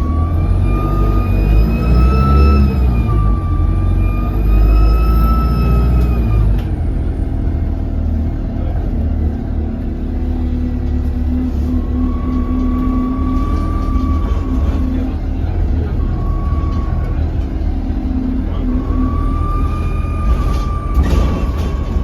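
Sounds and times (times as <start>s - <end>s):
bus diesel engine rumble: 0.0s - 22.0s.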